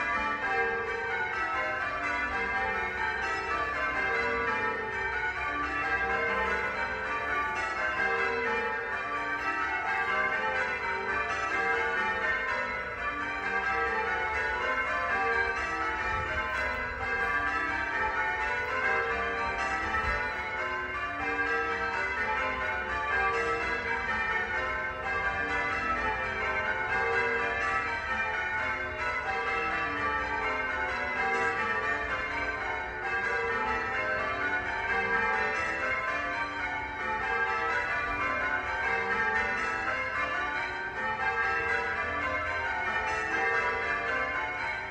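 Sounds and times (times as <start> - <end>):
church bells ringing: 0.0 - 44.9.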